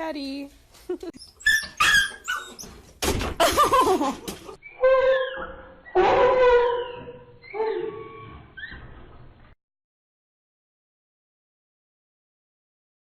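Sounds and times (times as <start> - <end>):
animal drawn-out cries: 4.6 - 8.8.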